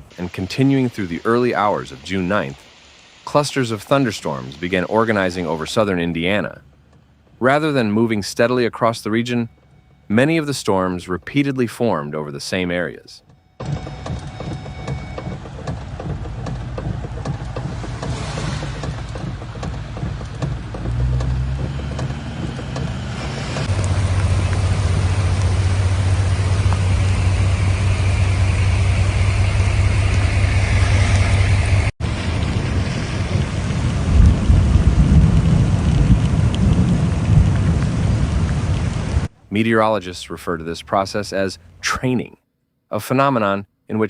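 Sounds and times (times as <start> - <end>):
heavy rain pouring: 0.0 - 11.1, 13.6 - 39.7
low rumble: 13.7 - 39.4.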